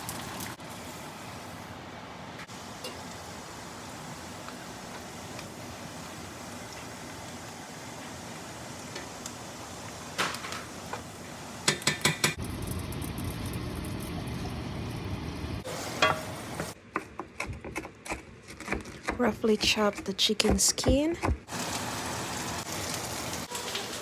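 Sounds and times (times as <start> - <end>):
chicken skin sizzling in a pan: 2.5 - 11.7, 21.5 - 24.0.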